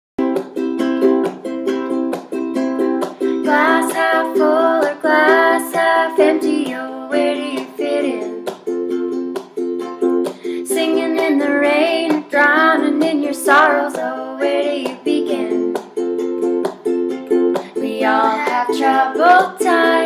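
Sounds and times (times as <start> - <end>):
ukulele strumming: 0.2 - 20.0
wordless vocal melody: 3.2 - 8.5, 10.3 - 15.8, 17.6 - 20.0.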